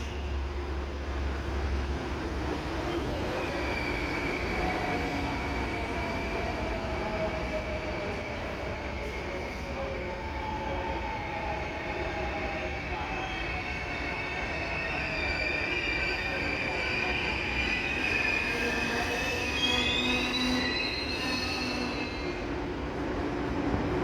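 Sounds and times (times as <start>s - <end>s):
train wheels squealing: 0.0s - 0.5s, 3.0s - 22.5s
train braking tones sliding down: 13.2s - 22.4s.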